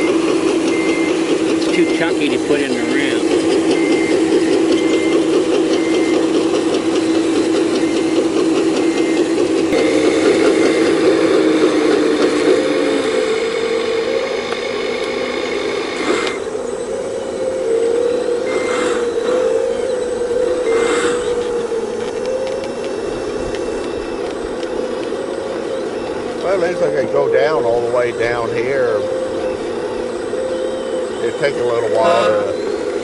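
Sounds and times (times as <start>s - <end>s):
excavator diesel engine: 0.0s - 33.0s
short high beep: 30.6s - 32.7s.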